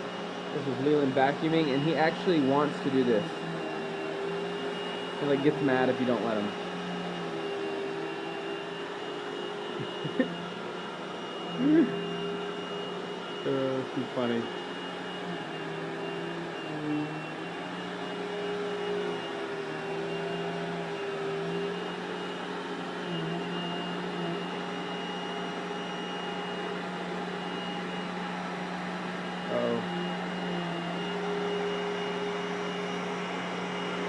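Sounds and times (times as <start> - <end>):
vacuum cleaner running: 0.0 - 34.0.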